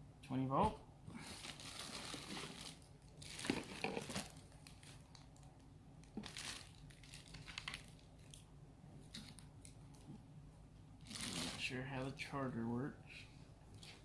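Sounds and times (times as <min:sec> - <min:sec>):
packaging crinkling and rustling: 0:01.2 - 0:08.4, 0:11.0 - 0:11.7.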